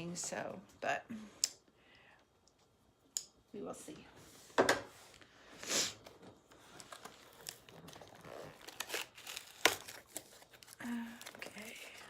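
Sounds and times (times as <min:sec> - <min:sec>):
packaging tearing and crinkling: 0:06.8 - 0:12.0.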